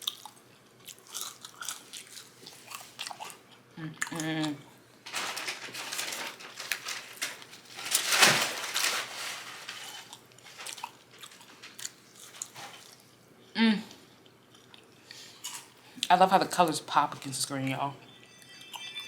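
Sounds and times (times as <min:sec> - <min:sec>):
person chewing crunchy food: 0:00.0 - 0:04.2, 0:09.8 - 0:13.2, 0:14.2 - 0:16.0.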